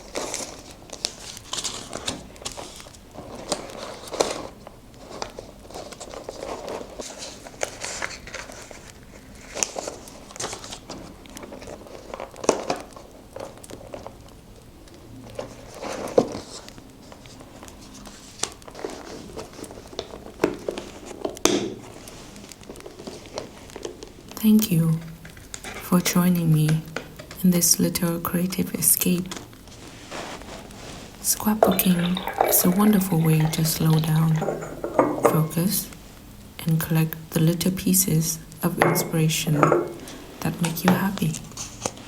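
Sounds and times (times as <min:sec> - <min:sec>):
paper rustling and crinkling: 0:00.0 - 0:14.2.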